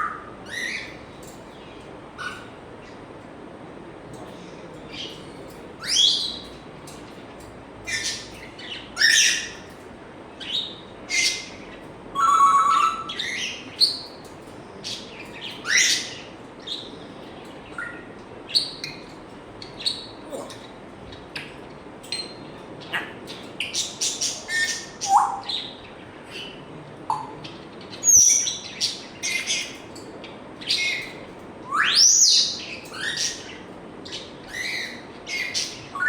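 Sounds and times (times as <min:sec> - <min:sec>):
parrot chirping and squawking: 0:00.0 - 0:01.1, 0:02.2 - 0:02.6, 0:07.8 - 0:09.8, 0:10.4 - 0:14.2, 0:14.9 - 0:16.9, 0:30.6 - 0:36.0
parrot whistling: 0:12.2 - 0:14.0.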